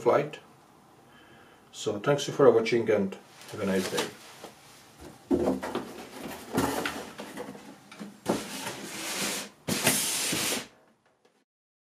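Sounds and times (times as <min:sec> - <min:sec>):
rustling handling noise: 0:03.3 - 0:10.7.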